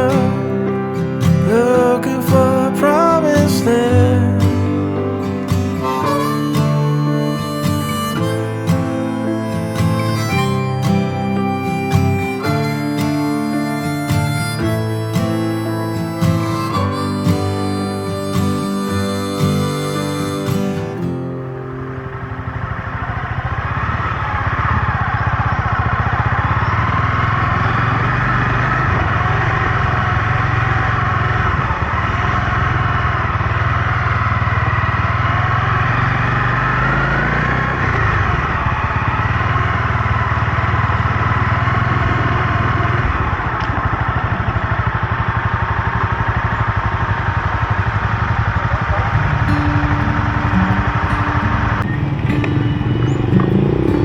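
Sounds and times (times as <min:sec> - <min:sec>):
motorcycle engine running: 0:49.0 - 0:54.0.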